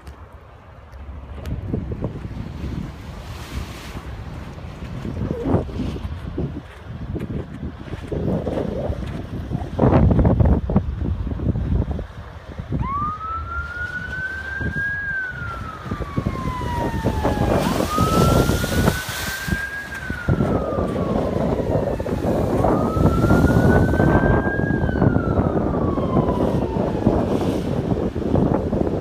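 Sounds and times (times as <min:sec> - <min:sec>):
waves rushing: 0:00.0 - 0:29.0
wind buffeting microphone: 0:00.0 - 0:29.0
siren wailing: 0:12.8 - 0:28.0.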